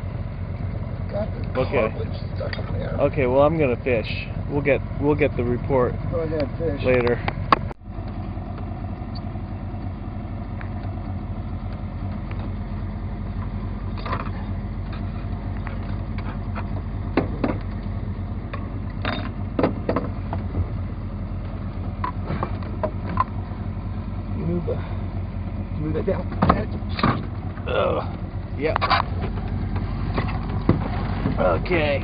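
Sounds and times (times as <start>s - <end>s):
boat motor idling: 0.0s - 32.0s
knocks and clatters in boat: 13.4s - 20.8s, 21.4s - 23.4s, 26.1s - 27.7s, 28.6s - 32.0s.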